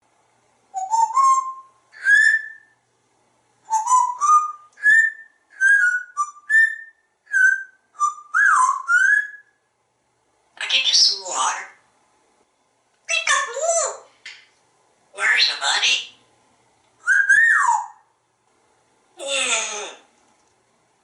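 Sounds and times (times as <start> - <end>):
parrot whistling: 0.7 - 2.8, 3.7 - 9.6, 17.0 - 18.1.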